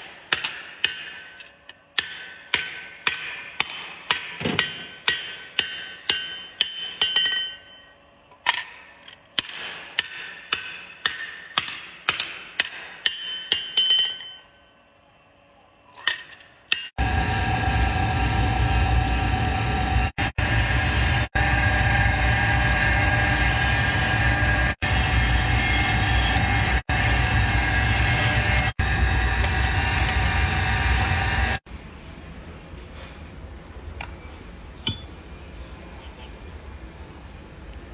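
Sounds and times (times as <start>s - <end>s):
hammer striking steel on anvil: 0.0s - 7.9s, 8.5s - 14.6s, 34.8s - 35.2s
loud steady machine noise: 17.0s - 31.6s.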